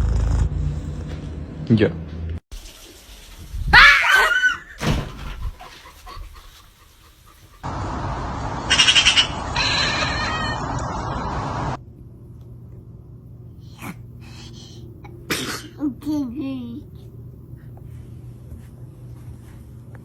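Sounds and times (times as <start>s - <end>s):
cat meowing: 8.7s - 10.9s.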